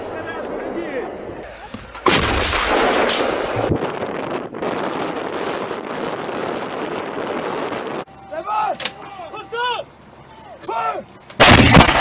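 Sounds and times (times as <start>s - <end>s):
artillery gun shot: 1.9s - 3.7s, 11.4s - 12.0s
wind or engine rushing: 2.5s - 8.1s
people shouting calls: 8.1s - 11.3s.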